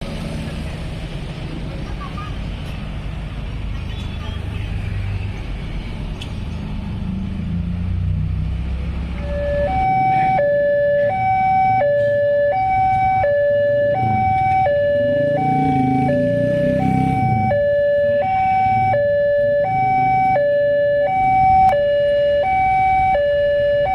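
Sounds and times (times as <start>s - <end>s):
road traffic rumbling: 0.0s - 23.9s
two-tone level crossing alarm: 9.2s - 23.9s.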